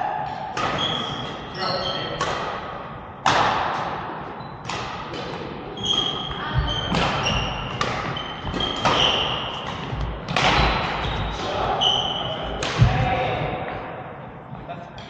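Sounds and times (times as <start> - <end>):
racket hitting shuttlecock: 0.3 - 1.4, 2.2 - 13.0
court shoes squeaking: 0.6 - 2.4, 4.4 - 4.9, 5.7 - 13.0.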